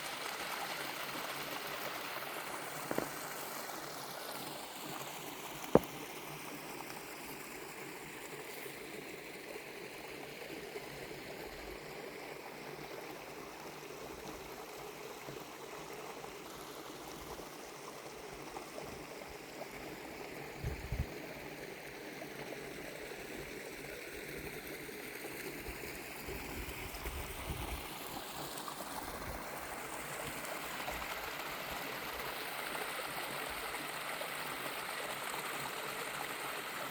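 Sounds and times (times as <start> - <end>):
stream rushing over rocks: 0.0 - 12.9, 24.2 - 36.9.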